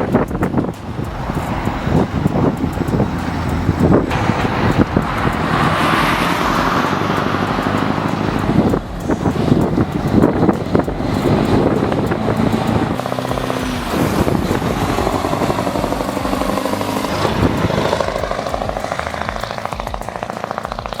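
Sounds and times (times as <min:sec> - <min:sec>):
truck diesel engine running hard: 0:00.0 - 0:21.0.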